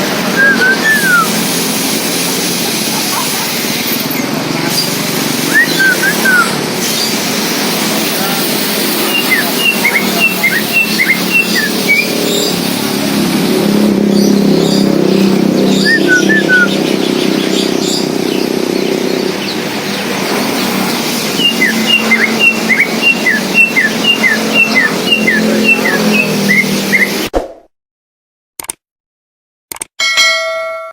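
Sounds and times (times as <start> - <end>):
bird singing whistled chirps: 0.3 - 1.4, 4.8 - 7.2, 8.8 - 12.6, 14.2 - 27.3.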